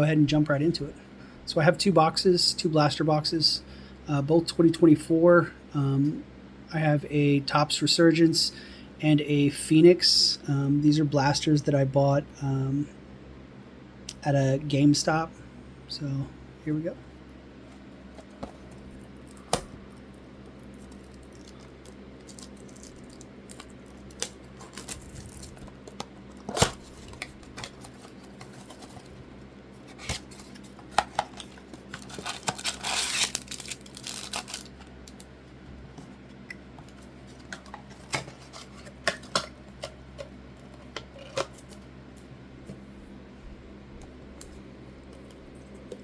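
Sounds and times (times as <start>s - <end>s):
wrapper tearing and crinkling: 19.0s - 29.2s, 31.3s - 35.2s.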